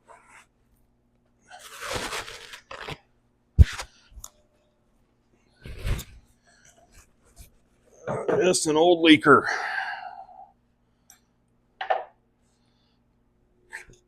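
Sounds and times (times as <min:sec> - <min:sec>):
paper towels tearing and rustling: 0:01.5 - 0:03.0, 0:03.6 - 0:04.0.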